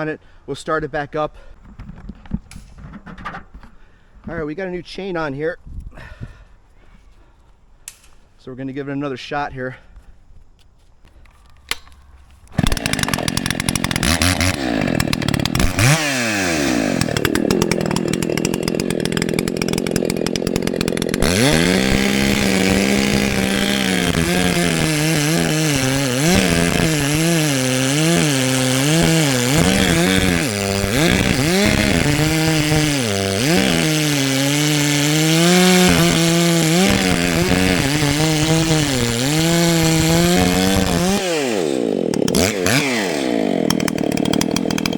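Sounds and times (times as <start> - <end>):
chainsaw cutting wood: 11.6 - 44.9.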